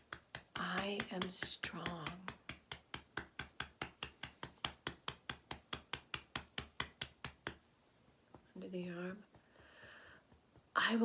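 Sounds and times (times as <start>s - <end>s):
fingertips tapping: 0.0s - 11.0s.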